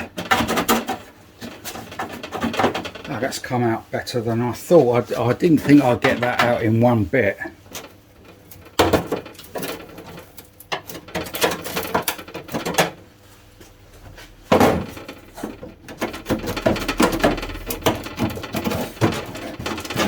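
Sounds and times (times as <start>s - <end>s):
hand tools knocking: 14.5s - 20.0s
sheet steel clinking and clattering: 14.5s - 20.0s.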